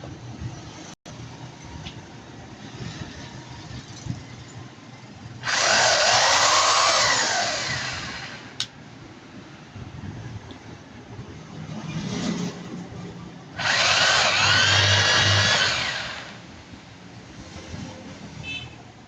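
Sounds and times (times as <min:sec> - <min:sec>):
electric drill running: 0:05.4 - 0:08.7, 0:13.6 - 0:16.5.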